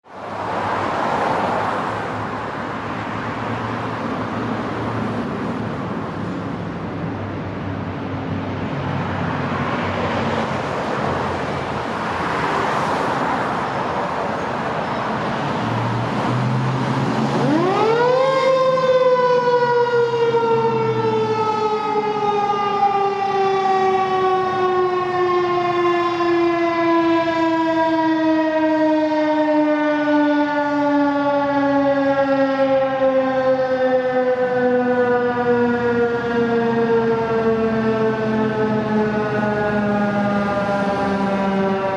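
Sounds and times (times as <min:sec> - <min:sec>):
traffic noise: 0:00.0 - 0:41.9
warning siren winding up and down: 0:15.5 - 0:41.9.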